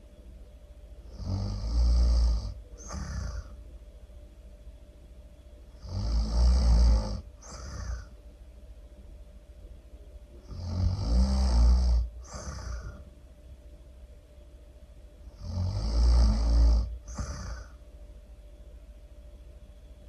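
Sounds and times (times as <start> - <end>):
loud rattling snoring: 1.1 - 3.6, 5.8 - 8.1, 10.4 - 13.0, 15.3 - 17.8.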